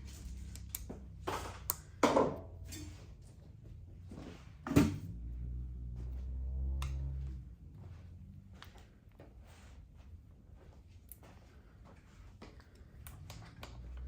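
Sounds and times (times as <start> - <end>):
low steady hum: 0.0 - 14.0
bike parts knocking and clattering: 0.8 - 3.0.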